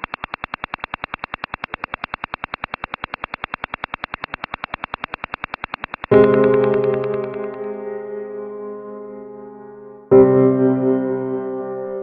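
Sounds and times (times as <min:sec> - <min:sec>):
rapid radio signal tapping: 0:00.0 - 0:07.9.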